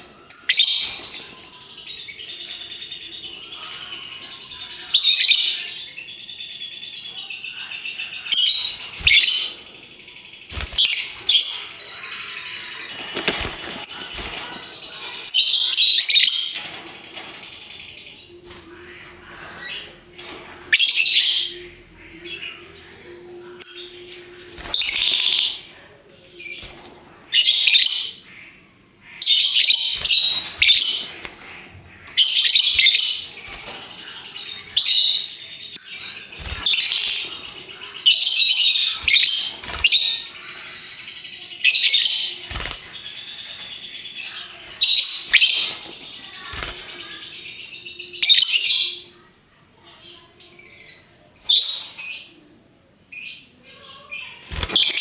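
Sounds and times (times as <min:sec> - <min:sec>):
lovebirds chattering: 0:00.0 - 0:55.0.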